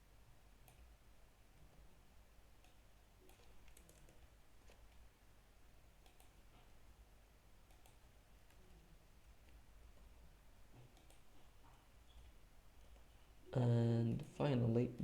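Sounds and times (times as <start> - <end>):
computer keyboard typing: 2.6 - 5.0, 6.0 - 6.7, 7.7 - 8.6, 10.8 - 11.6.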